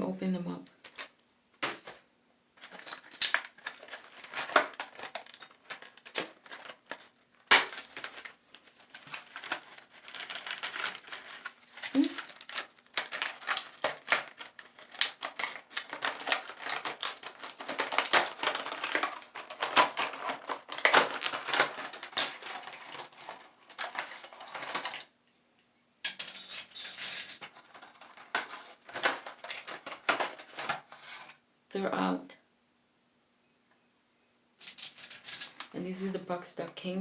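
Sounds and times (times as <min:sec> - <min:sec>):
packaging being torn open: 0:02.6 - 0:25.0, 0:26.4 - 0:31.3.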